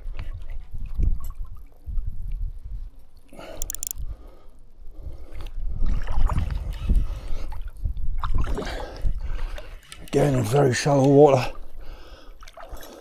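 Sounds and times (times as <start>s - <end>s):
wind on microphone: 0.0s - 3.0s, 4.9s - 9.7s
water sloshing and splashing: 5.7s - 13.0s.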